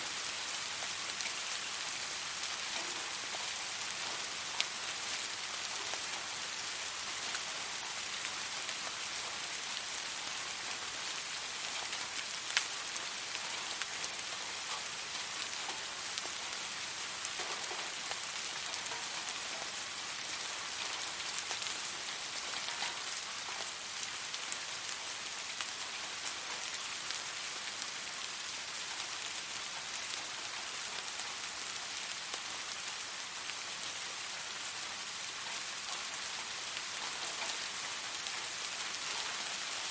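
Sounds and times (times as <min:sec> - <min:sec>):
steady rain hiss: 0:00.0 - 0:39.9
raindrop ticks: 0:00.4 - 0:09.6, 0:11.5 - 0:24.7, 0:35.4 - 0:39.9.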